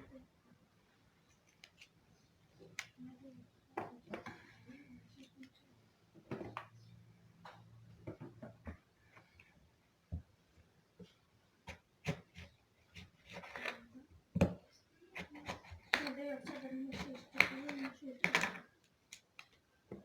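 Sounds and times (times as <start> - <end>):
knife cutting on a board: 11.6 - 13.8.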